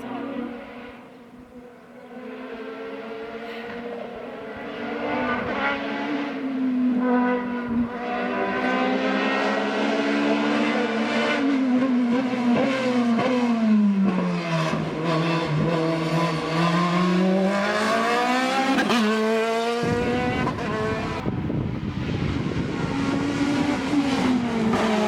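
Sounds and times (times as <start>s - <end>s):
race car engine at high revs: 0.0s - 25.0s.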